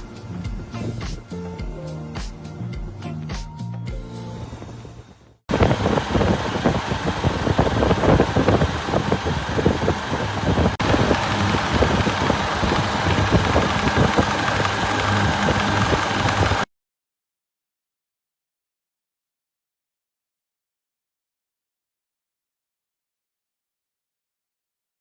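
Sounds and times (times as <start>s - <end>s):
refrigeration compressor running: 5.5s - 16.7s.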